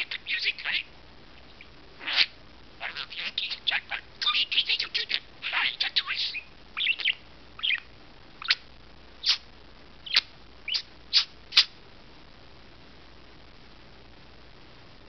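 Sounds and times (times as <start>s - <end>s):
parakeet chirping: 0.0s - 0.9s, 1.6s - 8.6s, 9.2s - 9.4s, 10.0s - 11.8s.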